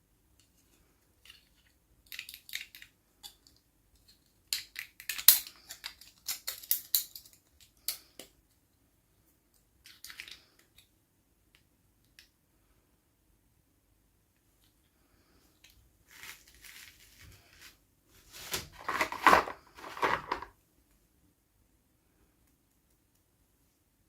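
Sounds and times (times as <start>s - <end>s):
toy packaging crackling: 18.4s - 20.5s.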